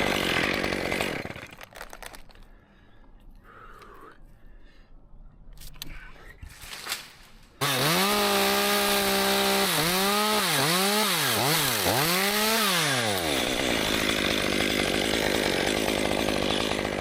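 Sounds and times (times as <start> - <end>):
chainsaw running: 0.0 - 2.1, 7.6 - 17.0.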